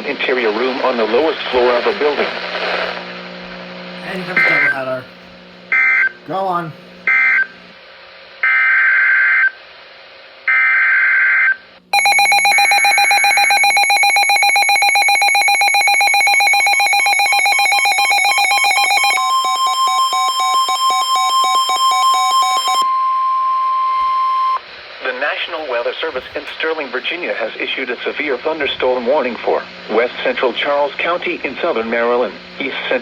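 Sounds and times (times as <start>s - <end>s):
two-tone attention signal: 12.0s - 24.6s.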